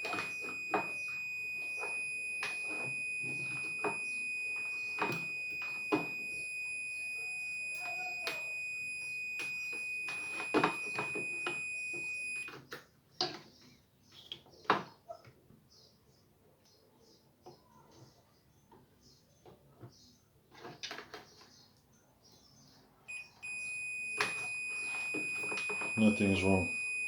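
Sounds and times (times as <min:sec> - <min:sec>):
multimeter continuity beep: 0:00.0 - 0:12.5, 0:23.1 - 0:27.0.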